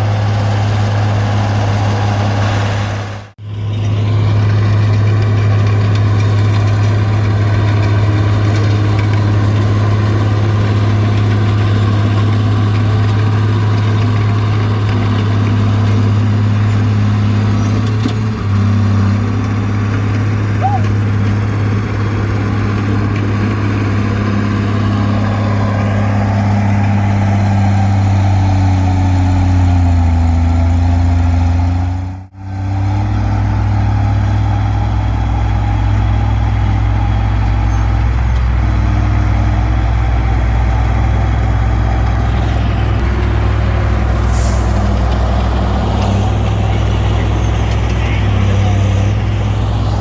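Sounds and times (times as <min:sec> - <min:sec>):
bulldozer diesel engine running: 0:00.0 - 0:50.0.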